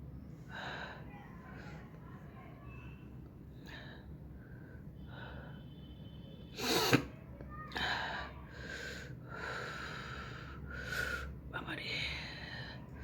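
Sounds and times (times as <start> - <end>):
person sneezing: 6.6 - 7.1.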